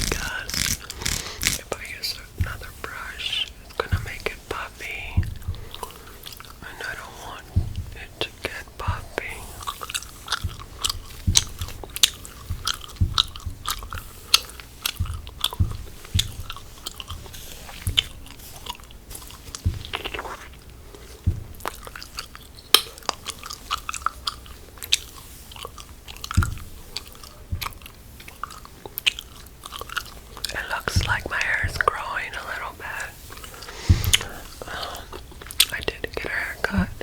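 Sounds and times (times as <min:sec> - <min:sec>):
gum chewing with wet smacks: 0:00.0 - 0:37.0.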